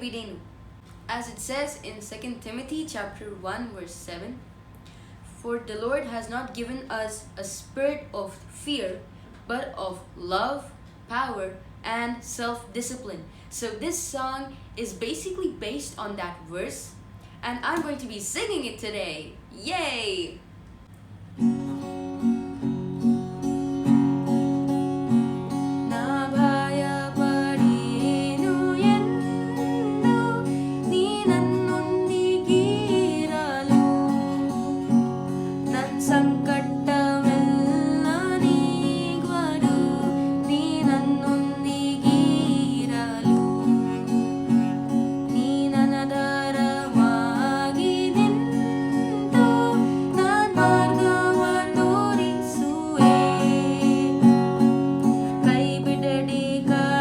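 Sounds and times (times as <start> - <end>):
acoustic guitar strumming chords: 21.3 - 57.0
woman singing: 25.8 - 57.0.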